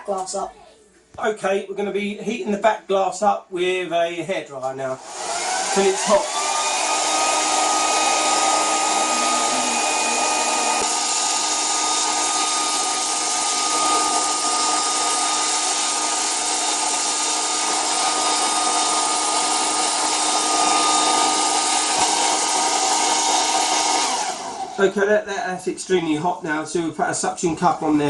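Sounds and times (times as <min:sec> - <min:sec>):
hairdryer running: 0:05.0 - 0:24.9.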